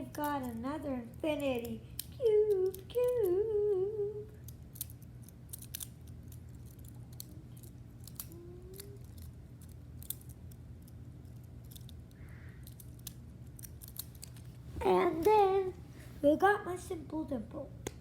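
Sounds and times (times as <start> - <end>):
plastic fidget cube clicking: 0.0 - 3.4, 4.4 - 14.5.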